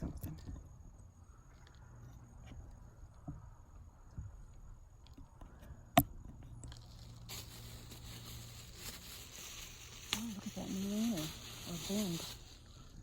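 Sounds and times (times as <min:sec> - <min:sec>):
steady hiss: 0:06.8 - 0:13.0.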